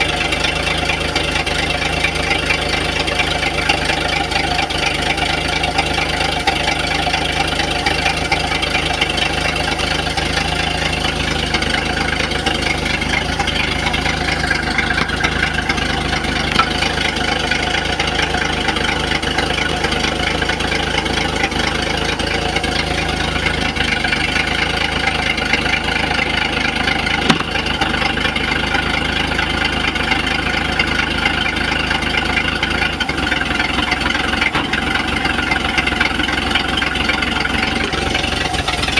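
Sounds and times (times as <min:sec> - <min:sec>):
engine idling with knocking: 0:00.0 - 0:38.9.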